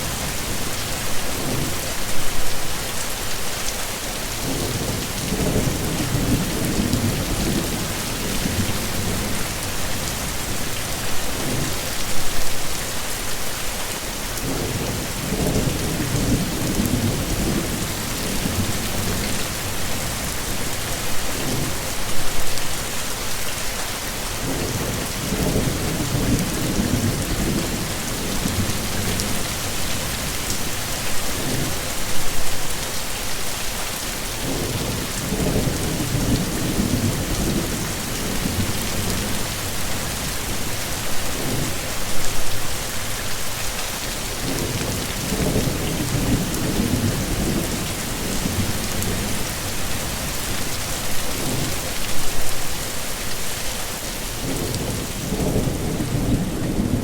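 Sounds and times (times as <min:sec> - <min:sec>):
heavy rain: 0:00.0 - 0:57.0
thunder rumbling: 0:54.4 - 0:57.0.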